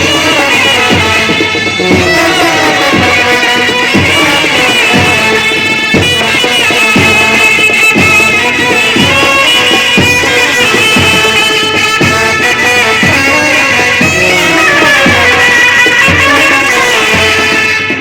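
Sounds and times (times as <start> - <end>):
band playing melody over drums: 0.0 - 18.0
strong drum strokes: 0.0 - 18.0.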